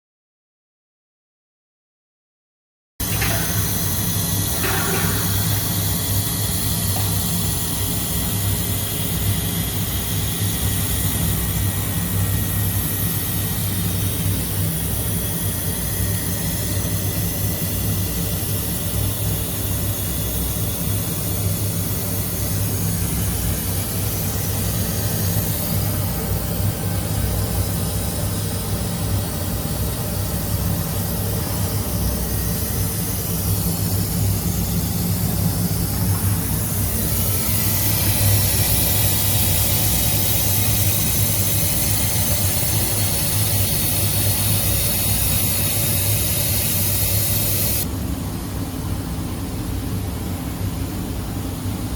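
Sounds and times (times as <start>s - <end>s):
sand blasting machine running: 3.0s - 47.9s.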